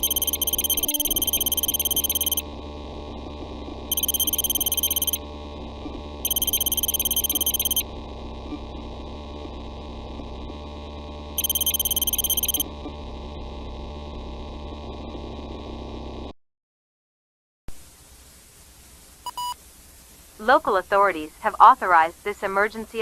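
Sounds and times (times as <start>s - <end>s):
rapidly pulsing alert beeps: 0.0s - 2.4s, 3.9s - 5.2s, 6.2s - 7.8s, 11.4s - 12.6s.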